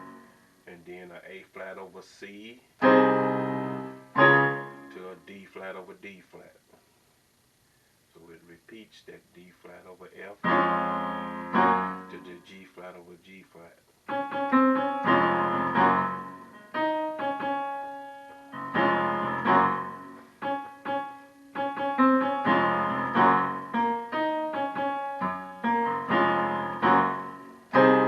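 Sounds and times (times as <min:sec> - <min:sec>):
piano chords ringing: 0:00.0 - 0:01.8, 0:02.8 - 0:05.8, 0:10.4 - 0:12.5, 0:14.1 - 0:28.0.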